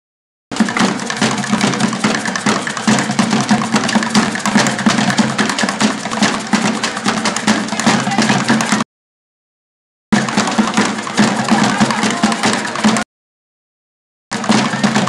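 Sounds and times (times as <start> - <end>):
fast percussion ensemble drumming: 0.5 - 8.9, 10.1 - 13.1, 14.3 - 15.0.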